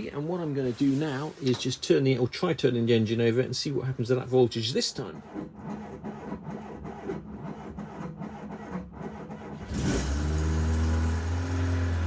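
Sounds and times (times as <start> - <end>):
van engine cranking: 7.9 - 12.0.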